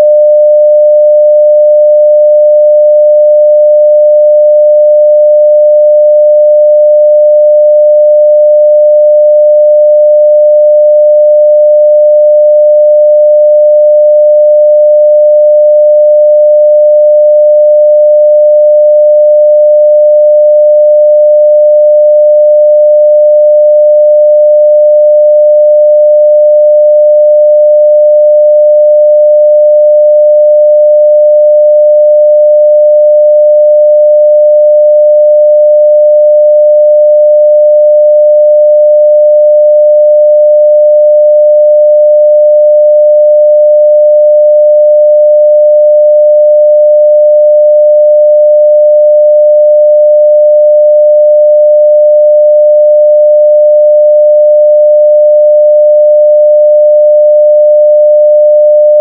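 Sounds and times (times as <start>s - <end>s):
sine-wave test tone: 0.0s - 59.0s.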